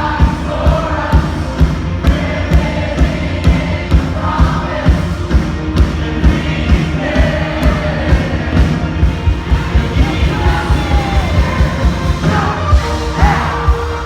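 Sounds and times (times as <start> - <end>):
music with steady beat: 0.0 - 14.0
person singing: 5.8 - 14.0.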